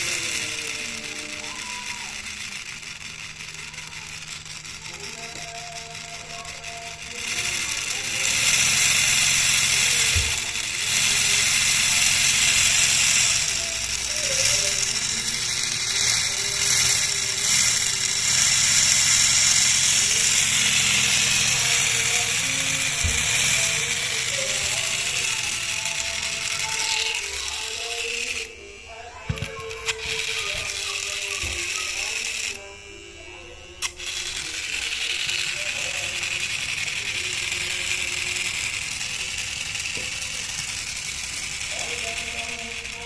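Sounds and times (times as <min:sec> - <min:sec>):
model engine clattering: 0:00.0 - 0:28.5.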